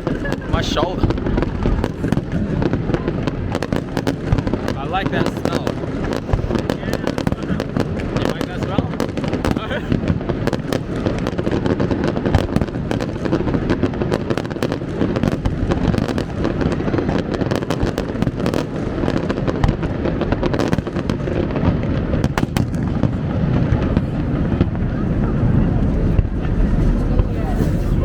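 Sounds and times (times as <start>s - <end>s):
fireworks bangs and crackles: 0.0s - 28.0s
deep rolling rumble: 21.4s - 28.0s.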